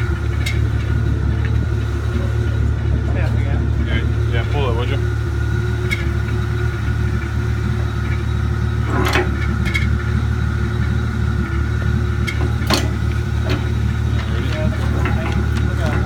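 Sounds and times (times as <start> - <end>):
tractor engine idling: 0.0 - 16.0.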